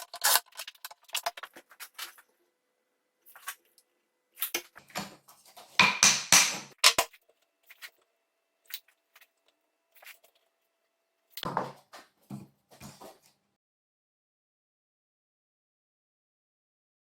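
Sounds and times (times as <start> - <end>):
wood or tools knocking: 5.8 - 6.8.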